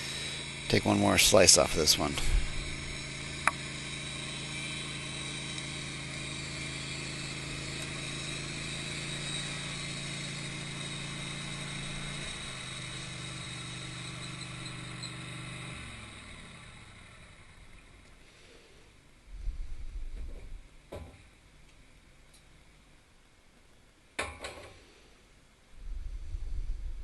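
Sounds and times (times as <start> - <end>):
band sawmill cutting wood: 0.0 - 18.7
engine winding down: 0.0 - 20.8.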